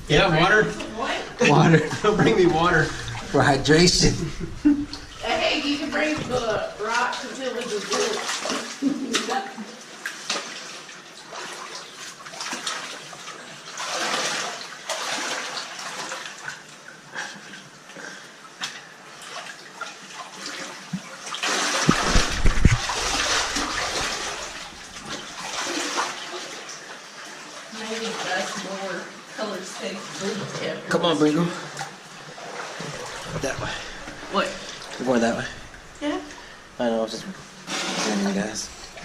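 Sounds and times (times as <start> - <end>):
heavy low thumping: 0.0 - 6.8
stream water running: 0.0 - 39.0.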